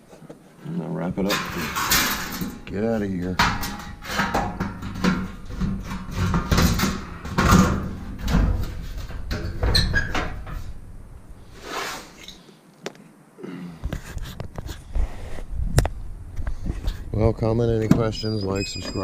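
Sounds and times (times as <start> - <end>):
knocks bangs and clatter of handling: 1.2 - 11.4.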